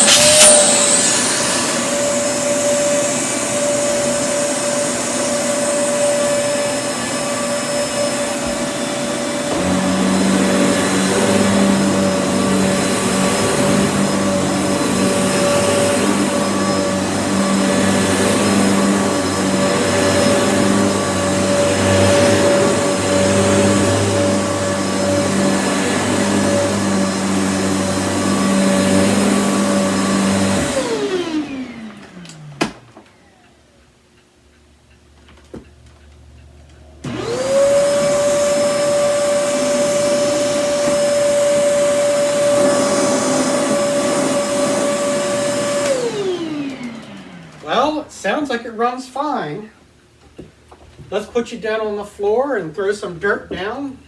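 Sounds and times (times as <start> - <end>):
vacuum cleaner motor whine: 0.0 - 33.8, 37.0 - 49.0.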